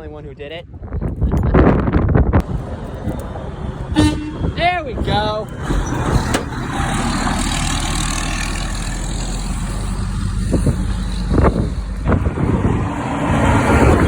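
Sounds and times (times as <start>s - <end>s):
road traffic rumble: 2.4s - 14.0s.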